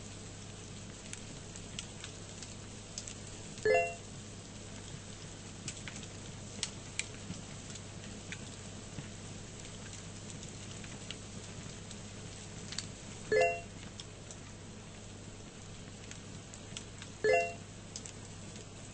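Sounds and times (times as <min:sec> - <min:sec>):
low hum and hiss: 0:00.0 - 0:18.9
short high-pitched beep: 0:03.7 - 0:04.0, 0:13.4 - 0:13.7, 0:17.3 - 0:17.6.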